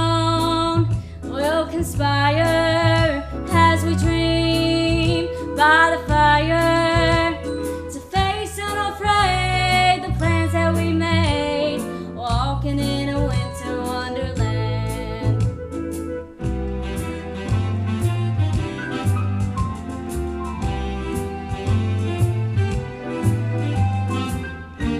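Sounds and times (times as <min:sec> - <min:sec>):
woman singing: 0:00.0 - 0:15.6
bass notes: 0:00.0 - 0:24.9.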